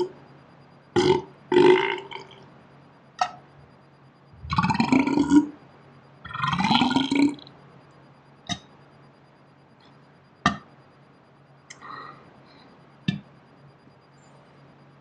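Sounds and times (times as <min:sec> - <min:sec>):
man burping: 0:01.0 - 0:02.4, 0:04.4 - 0:05.4.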